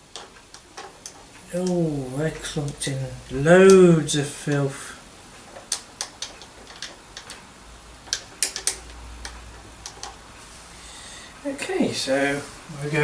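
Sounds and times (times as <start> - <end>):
vacuum cleaner parts clicking: 5.4 - 7.5, 8.1 - 10.2.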